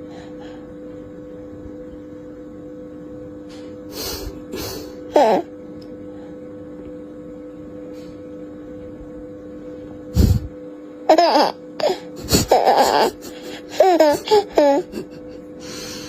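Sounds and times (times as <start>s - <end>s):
steady hum: 0.0s - 16.0s
baby laughing: 5.1s - 5.5s, 11.1s - 15.4s.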